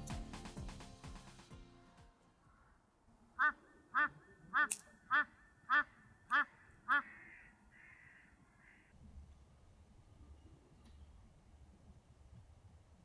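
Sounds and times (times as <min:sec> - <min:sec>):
woodpecker calling: 0:00.0 - 0:08.9
sharp click: 0:04.7 - 0:04.9.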